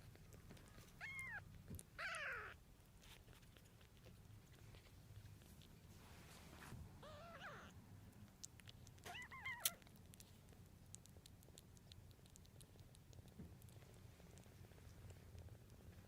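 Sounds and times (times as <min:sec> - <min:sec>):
kitten mewing: 0:01.0 - 0:02.6, 0:07.0 - 0:07.8, 0:08.5 - 0:09.9.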